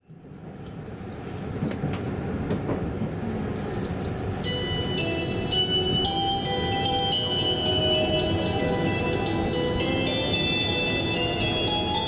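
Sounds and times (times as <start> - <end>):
train running rumble: 0.8 - 12.0
electronic chime melody: 4.5 - 12.0.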